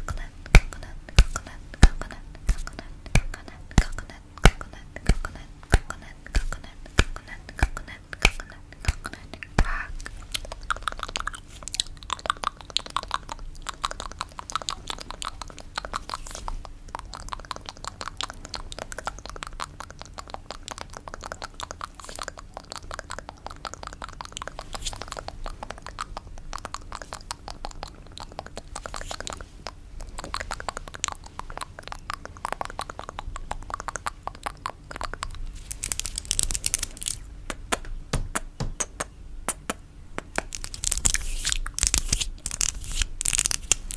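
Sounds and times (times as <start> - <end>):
fingernails tapping on coconut: 0.5 - 9.8, 37.8 - 40.5.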